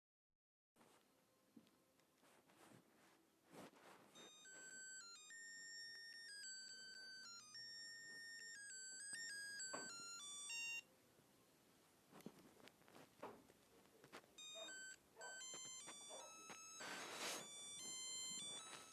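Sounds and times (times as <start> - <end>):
mobile phone ringtone melody: 4.1 - 10.9, 14.4 - 18.9.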